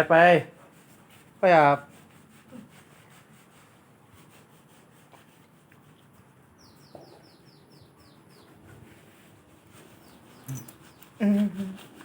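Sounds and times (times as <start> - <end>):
small bird chirping: 6.5 - 9.0, 9.9 - 11.2.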